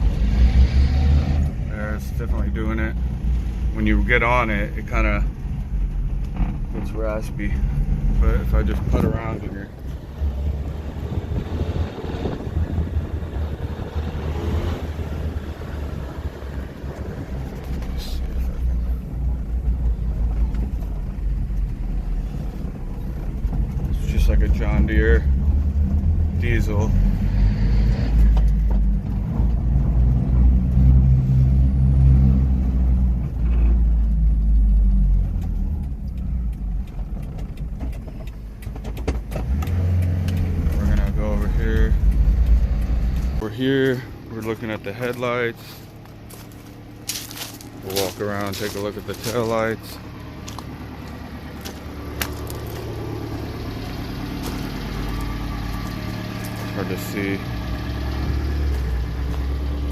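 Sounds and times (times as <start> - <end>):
small truck engine idling: 40.3 - 59.9.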